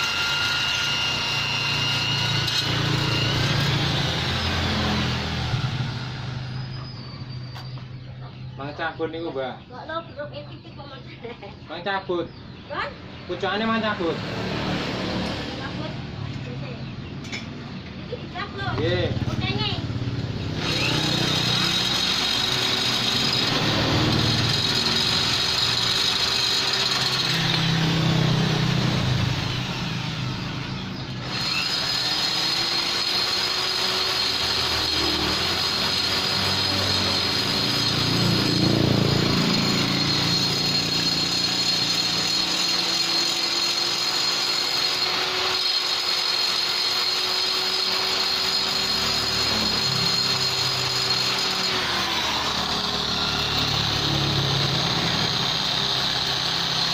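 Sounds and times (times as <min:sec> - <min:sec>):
rotary grinder whining on metal: 0:00.0 - 0:09.6, 0:13.3 - 0:56.9.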